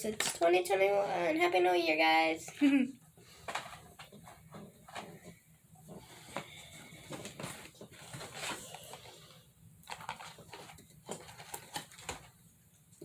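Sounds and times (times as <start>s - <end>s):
plastic packaging crinkling: 6.1s - 12.5s.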